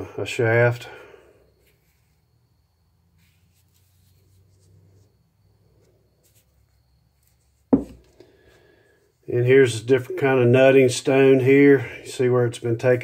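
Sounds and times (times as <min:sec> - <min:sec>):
stone knocking: 0:07.7 - 0:08.1.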